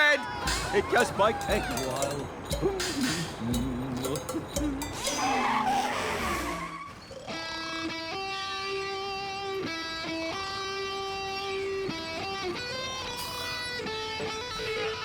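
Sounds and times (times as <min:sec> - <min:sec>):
held pitched music notes: 0:00.4 - 0:06.7.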